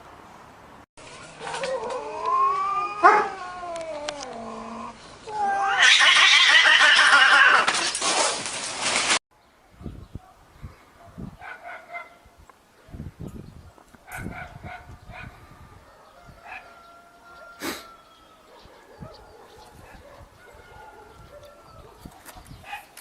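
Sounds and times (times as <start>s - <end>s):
cat yowling: 1.5s - 4.4s, 5.3s - 7.7s
cats screeching: 5.3s - 7.8s.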